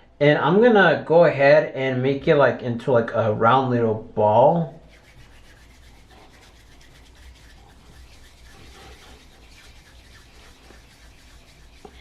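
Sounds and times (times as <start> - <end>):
hands rubbing clay: 4.8 - 12.0.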